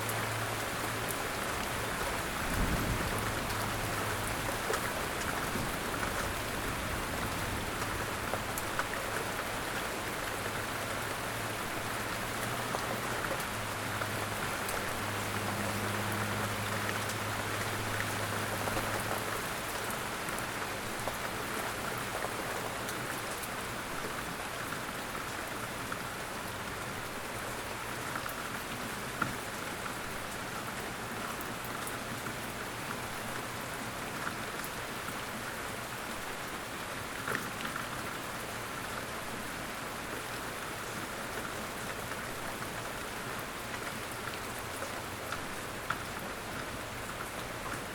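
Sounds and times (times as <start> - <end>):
steady rain falling: 0.0 - 47.9.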